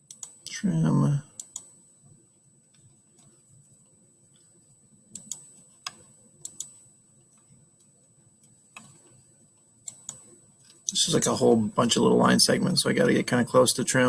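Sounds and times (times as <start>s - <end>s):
faint high whine: 0.0s - 14.0s
computer mouse clicking: 0.1s - 0.5s, 1.4s - 1.7s, 5.1s - 9.2s, 9.8s - 10.8s.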